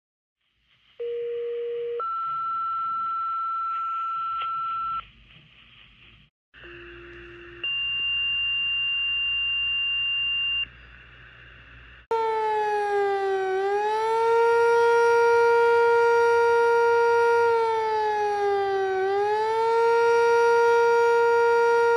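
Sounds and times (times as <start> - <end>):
fire siren rising and falling: 12.1 - 21.9.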